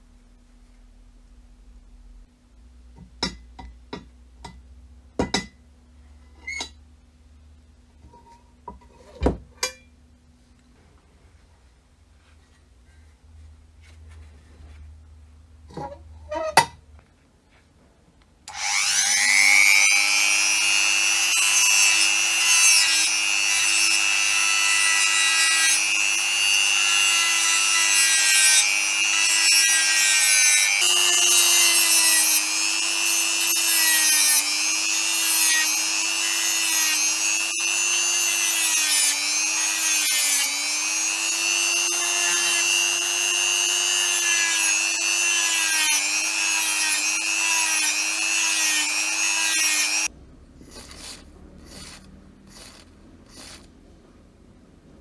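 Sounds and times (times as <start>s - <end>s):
electric power tool whine: 18.5s - 53.7s.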